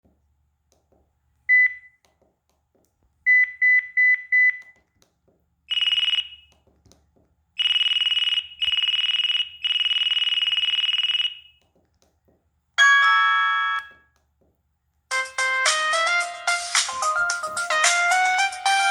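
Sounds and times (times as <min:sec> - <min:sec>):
electronic ringtone beeps: 0:05.7 - 0:06.5, 0:07.6 - 0:11.5, 0:12.8 - 0:14.0.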